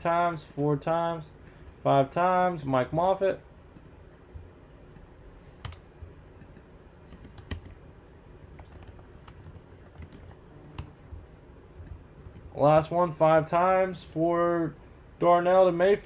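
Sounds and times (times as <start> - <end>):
computer keyboard typing: 5.6 - 5.8, 6.4 - 7.8, 8.5 - 11.2, 11.8 - 12.6.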